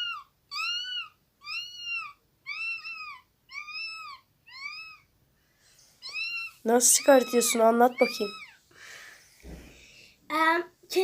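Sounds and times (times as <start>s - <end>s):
child imitating kitten meow: 0.0s - 5.1s, 6.0s - 8.6s.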